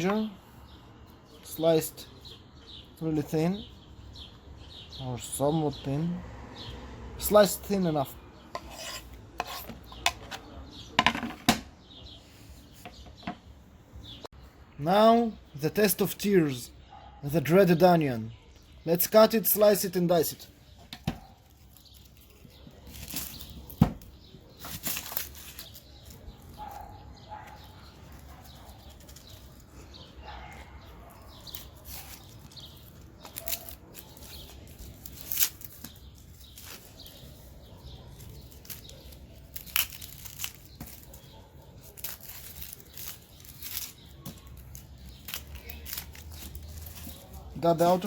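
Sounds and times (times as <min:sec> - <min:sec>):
onion skin crinkling and tearing: 0:21.0 - 0:29.9, 0:31.0 - 0:48.0.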